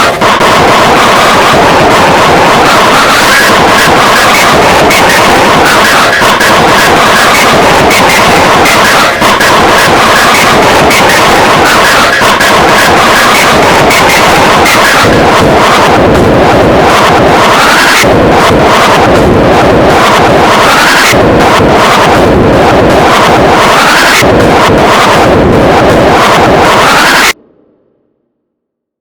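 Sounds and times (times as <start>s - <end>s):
chopped sneeze remix: 0.0s - 27.3s.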